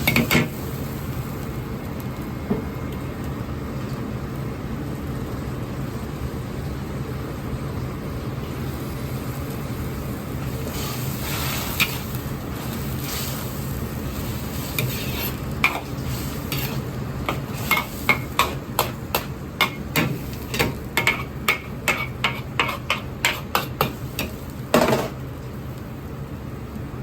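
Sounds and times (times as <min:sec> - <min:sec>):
metal ladle clanking and scraping a wok: 0:10.7 - 0:13.4, 0:14.5 - 0:25.1.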